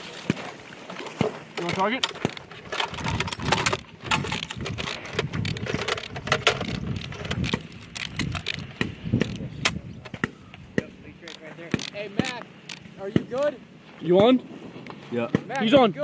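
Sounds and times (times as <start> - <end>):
noisy outdoor background: 0.0 - 16.0
sharp clicks and metallic rattling: 1.6 - 10.2, 11.2 - 13.4.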